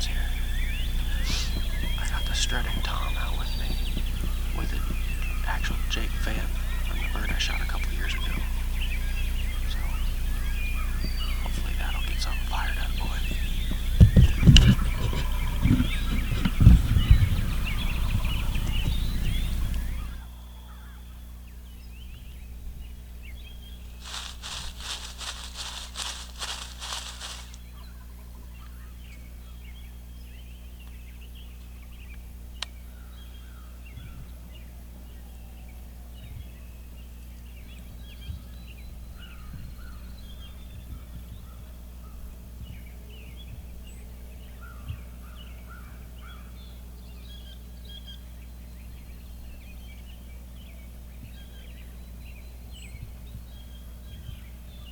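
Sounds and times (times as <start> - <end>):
raspy turkey gobbling: 0.0 - 21.1, 24.0 - 27.6
faint songbirds chirping: 0.0 - 54.9
steady low hum: 0.0 - 54.9.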